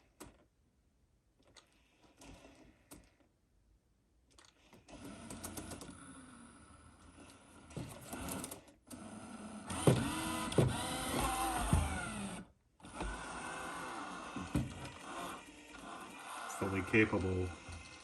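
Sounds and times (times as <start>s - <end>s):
robot vacuum motors whining: 4.4s - 18.0s
vacuum knocking against rug: 9.7s - 12.2s, 14.3s - 14.9s.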